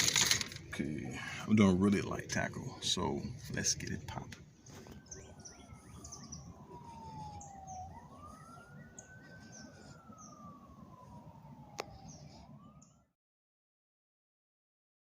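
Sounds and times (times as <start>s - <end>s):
emergency siren wailing: 0.0s - 13.2s.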